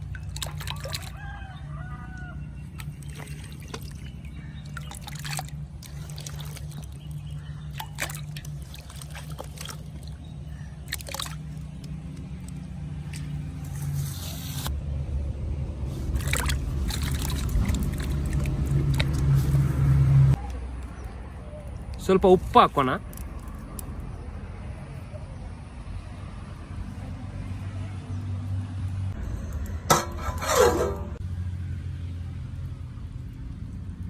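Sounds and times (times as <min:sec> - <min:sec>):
water sloshing in a pot: 0:00.0 - 0:14.0, 0:15.9 - 0:20.4, 0:29.2 - 0:31.2
low rumble: 0:14.7 - 0:20.4, 0:29.1 - 0:30.4.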